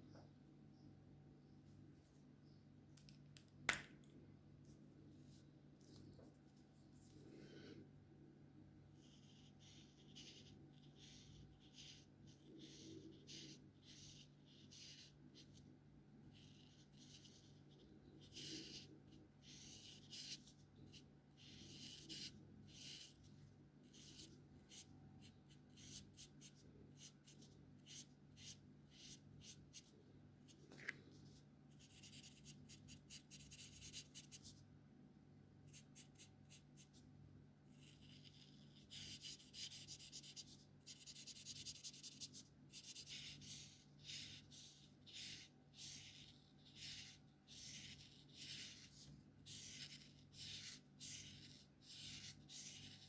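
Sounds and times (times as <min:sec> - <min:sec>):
markers stroking across paper: 0:09.0 - 0:30.6, 0:31.2 - 0:34.6, 0:35.7 - 0:37.1, 0:37.7 - 0:53.0.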